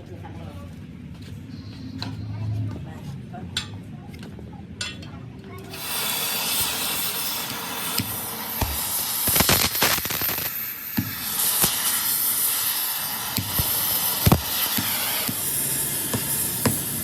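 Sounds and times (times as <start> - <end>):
steady hiss: 5.7 - 17.0.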